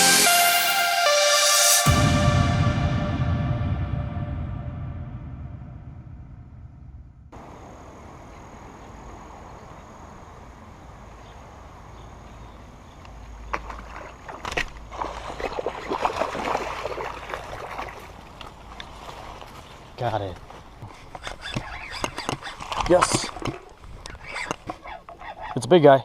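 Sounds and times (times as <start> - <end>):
background music: 0.0 - 5.1
water splashing and sloshing: 13.1 - 21.2
small stream rushing: 13.5 - 19.9.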